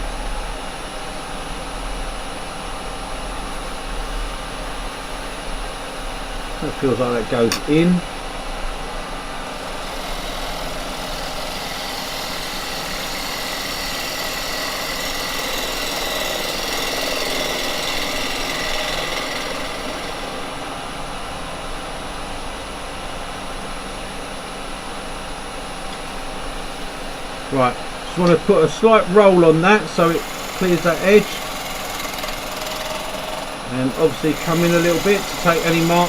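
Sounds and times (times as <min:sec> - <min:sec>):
lathe motor hum: 0:02.4 - 0:36.0
chisel cutting hiss: 0:09.6 - 0:21.0, 0:26.7 - 0:36.0.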